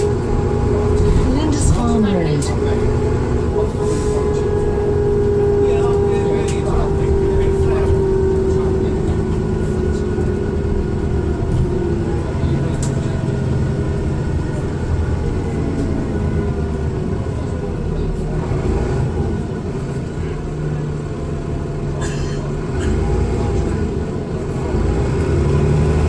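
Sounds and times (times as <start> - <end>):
bus engine and road rumble: 0.0 - 26.0.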